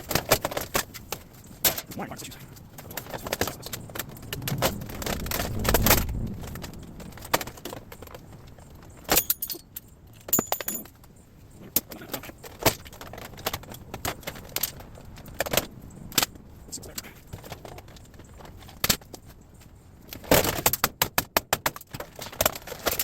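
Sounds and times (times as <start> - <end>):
scrap metal clinking and clanking: 6.4 - 11.1.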